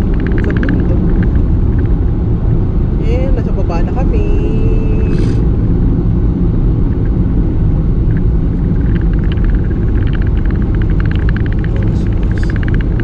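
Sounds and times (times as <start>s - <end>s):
car road and engine rumble: 0.0s - 13.0s
rapid light clicks: 8.1s - 13.0s.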